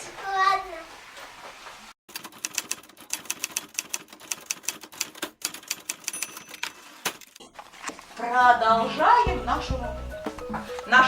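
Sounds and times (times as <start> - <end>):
typewriter keys clacking: 2.1 - 7.3.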